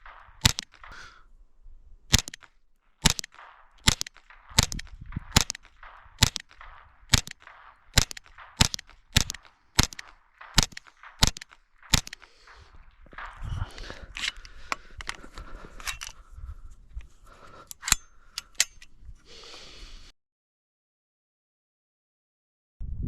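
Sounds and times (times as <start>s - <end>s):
rifle shots: 0.0s - 1.2s, 2.1s - 14.9s.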